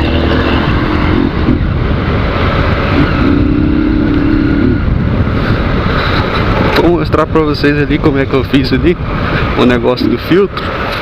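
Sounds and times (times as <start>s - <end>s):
motorcycle engine running: 0.0s - 8.3s
wind and road noise: 0.0s - 11.0s.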